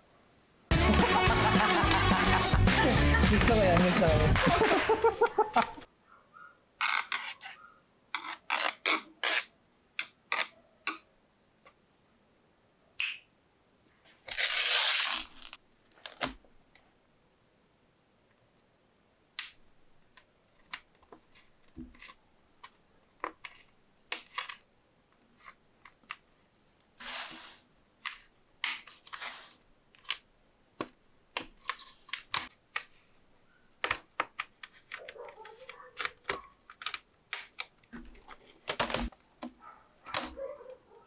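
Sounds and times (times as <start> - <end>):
scrape on laptop casing: 27.0 - 27.7, 28.6 - 29.6.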